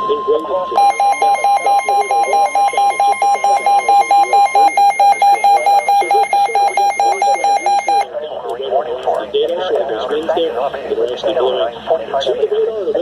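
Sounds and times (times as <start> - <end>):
rapid electronic beeping: 0.0 - 8.1
steady warning tone: 0.0 - 8.1.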